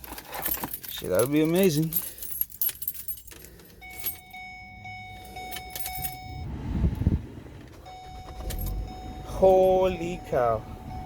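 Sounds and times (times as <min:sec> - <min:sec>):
keys jangling in ignition: 0:00.0 - 0:06.4, 0:07.8 - 0:10.2
electronic warning chime: 0:03.8 - 0:06.5, 0:07.9 - 0:11.0
car engine starting: 0:03.9 - 0:11.0.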